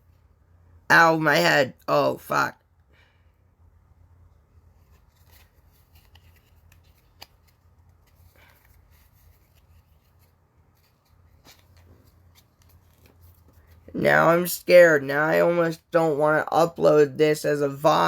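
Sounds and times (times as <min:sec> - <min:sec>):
faint low hum: 0:00.0 - 0:18.0
trading cards rustling and clicking: 0:04.7 - 0:13.9.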